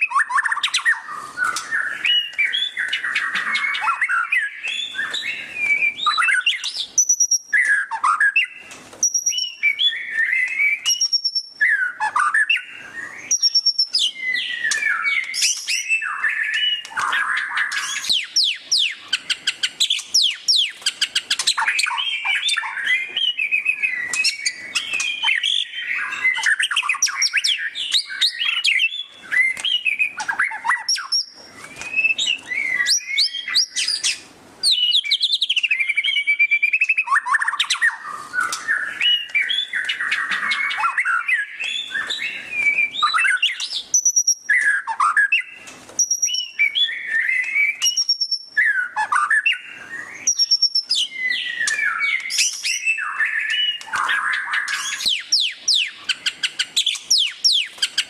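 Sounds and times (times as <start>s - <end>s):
bird singing trills and whistles: 0.0s - 58.0s.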